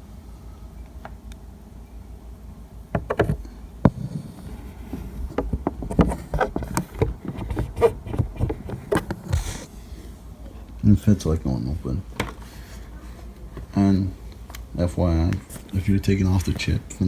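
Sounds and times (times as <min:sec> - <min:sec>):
low steady hum: 0:00.0 - 0:17.0
plastic toy car clicks and knocks: 0:03.0 - 0:09.7.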